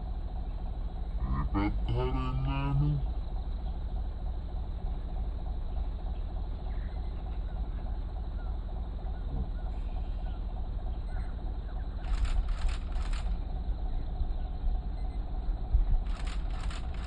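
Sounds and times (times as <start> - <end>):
vehicle engine rumbling: 0.0 - 17.0
faint bird chirps: 0.2 - 17.0
sharp clicks: 12.0 - 13.5, 16.0 - 17.0.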